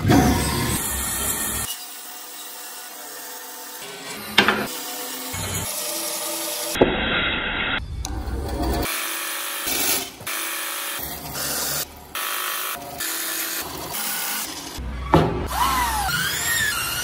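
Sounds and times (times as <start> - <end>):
power tools cutting wood: 8.8 - 14.8.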